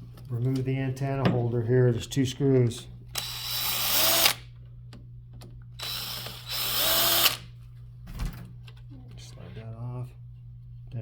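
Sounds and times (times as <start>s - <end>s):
power drill motor running: 3.2s - 4.4s, 5.8s - 7.5s.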